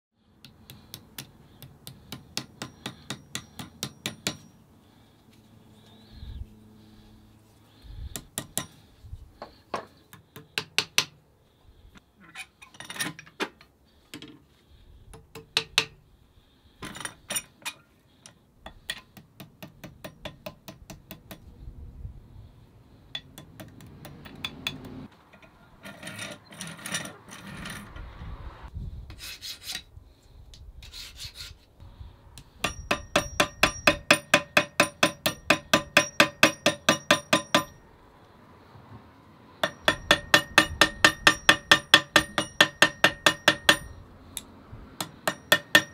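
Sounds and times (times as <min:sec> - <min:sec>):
hammer blows ringing: 0:32.6 - 0:37.8, 0:39.6 - 0:44.1, 0:45.0 - 0:45.9.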